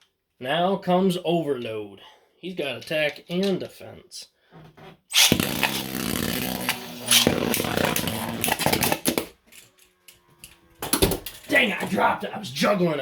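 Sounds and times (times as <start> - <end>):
spinning tops whirring and rattling: 5.2 - 11.6.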